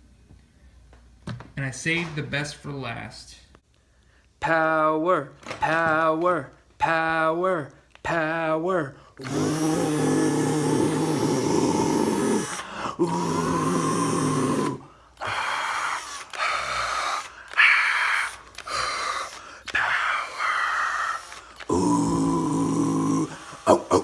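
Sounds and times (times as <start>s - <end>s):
man growling and grunting: 9.2s - 24.0s.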